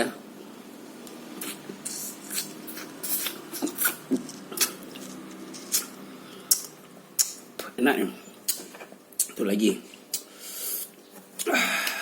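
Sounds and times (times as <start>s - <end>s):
faint steady hum: 0.0s - 12.0s
wet chewing and sucking: 1.4s - 7.4s.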